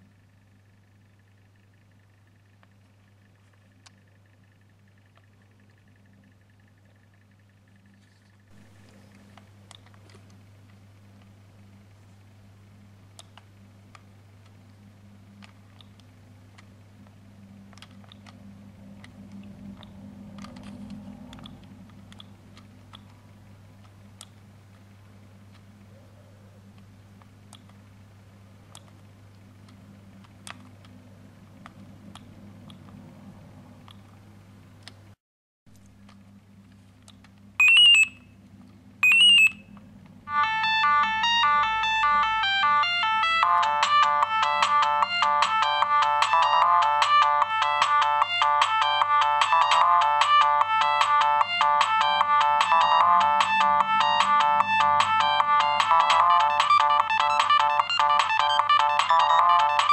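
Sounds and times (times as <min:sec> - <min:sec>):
low electrical hum: 0:00.0 - 0:59.9
phone ringtone melody: 0:37.6 - 0:38.2, 0:39.0 - 0:39.6, 0:40.3 - 0:59.9
short electronic beeps: 0:37.6 - 0:38.2, 0:39.0 - 0:39.7.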